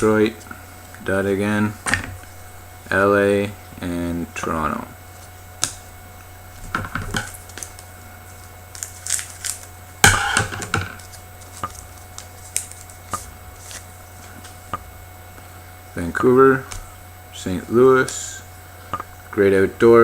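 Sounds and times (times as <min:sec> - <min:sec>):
cards clicking and rustling: 0:06.6 - 0:14.8.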